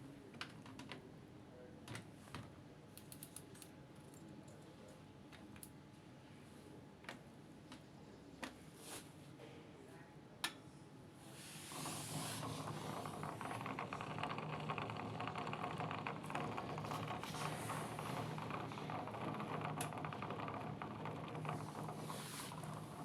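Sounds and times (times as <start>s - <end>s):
click: 3.0s - 3.7s
washing machine drain pump humming: 11.6s - 23.0s.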